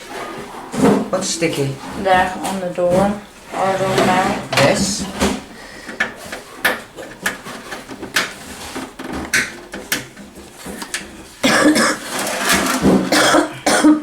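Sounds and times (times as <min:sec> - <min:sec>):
rough rasping noise: 0:00.0 - 0:05.6.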